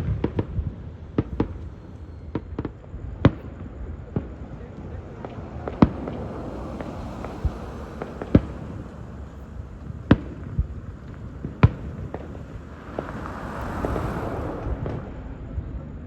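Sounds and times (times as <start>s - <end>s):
rising firework hiss: 5.6s - 15.9s.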